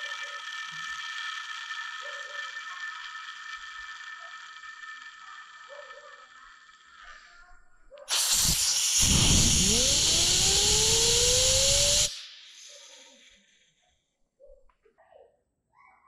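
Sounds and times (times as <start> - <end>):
rising whine of spinning: 0.0 - 7.2, 8.1 - 13.4
compressed air blast: 8.1 - 13.4.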